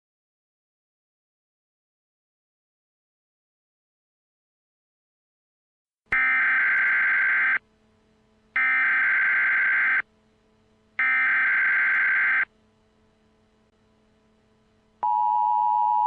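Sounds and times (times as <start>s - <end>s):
screeching digital data bursts: 6.2s - 7.6s, 8.6s - 10.0s, 11.0s - 12.5s.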